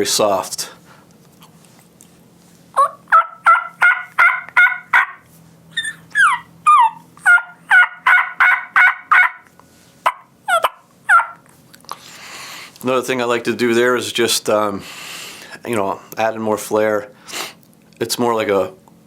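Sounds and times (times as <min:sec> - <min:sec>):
turkey call yelps and whines: 0:02.8 - 0:11.5.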